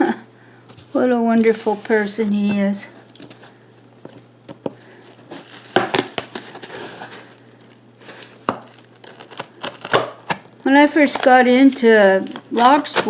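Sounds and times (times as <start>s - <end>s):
cardboard crinkling and tearing: 5.1s - 13.0s.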